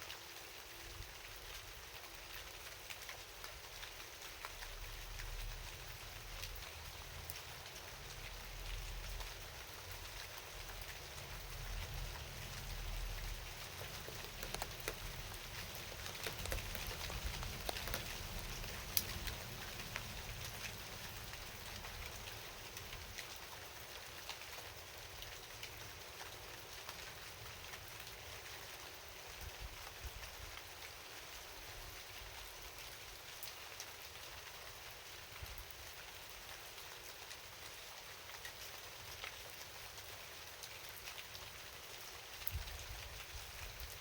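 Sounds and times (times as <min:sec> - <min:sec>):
steady rain falling: 0:00.0 - 0:44.0
raindrops tapping: 0:10.4 - 0:23.4.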